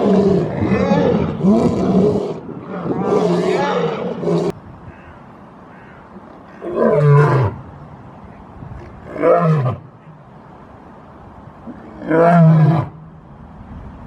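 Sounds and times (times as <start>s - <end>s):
lion roaring: 0.0s - 4.5s.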